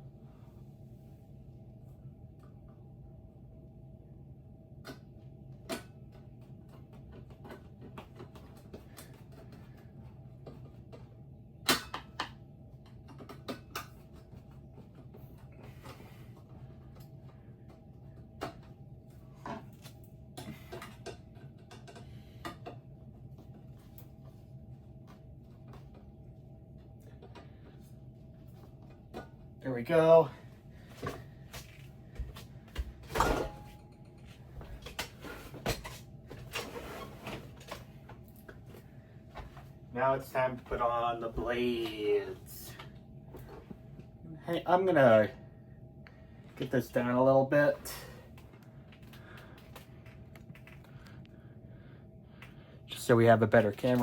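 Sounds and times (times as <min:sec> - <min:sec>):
steady low hum: 0:00.0 - 0:54.0
clicks and knocks of fan parts: 0:04.8 - 0:24.4, 0:26.8 - 0:29.4, 0:30.8 - 0:36.7, 0:48.3 - 0:51.4, 0:53.5 - 0:54.0.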